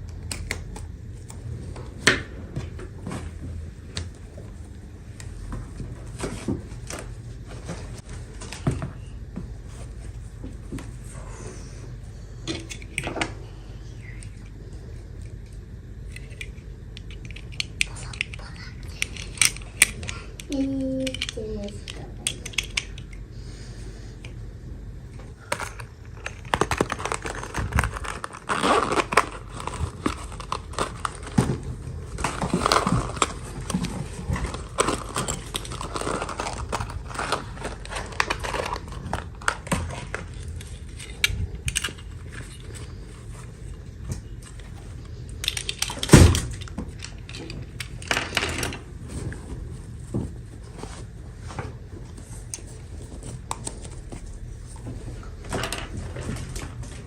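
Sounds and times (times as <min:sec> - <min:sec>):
packaging crinkling and tearing: 0:25.6 - 0:43.4.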